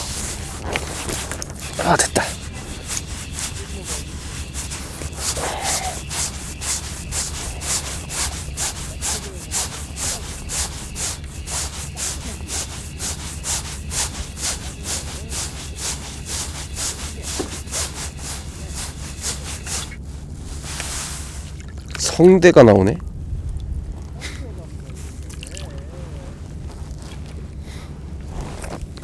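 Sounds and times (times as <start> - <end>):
short hiss: 0.0 - 21.5.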